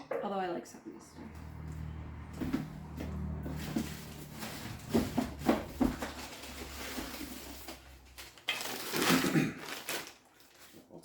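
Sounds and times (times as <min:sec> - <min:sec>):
rustling and scraping of packing: 0:02.4 - 0:11.0.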